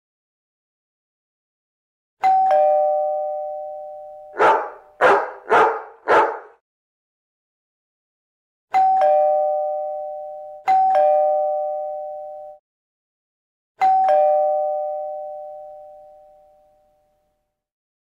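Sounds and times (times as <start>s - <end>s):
two-note doorbell chime: 2.2s - 4.4s, 8.7s - 12.6s, 13.8s - 17.4s.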